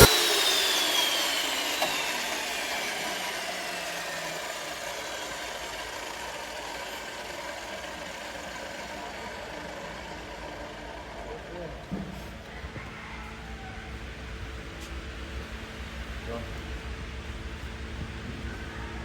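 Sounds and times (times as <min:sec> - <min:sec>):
electric motor whine winding down: 0:00.0 - 0:16.2
steady mechanical hum: 0:00.0 - 0:19.0.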